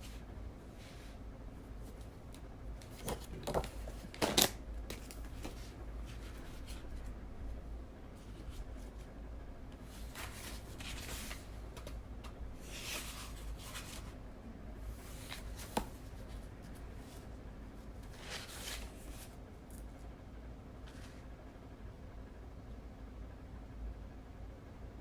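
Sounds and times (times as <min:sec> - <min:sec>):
steady low hum: 0:00.0 - 0:25.0
paper being handled: 0:09.8 - 0:12.0, 0:12.6 - 0:14.2, 0:18.0 - 0:19.4.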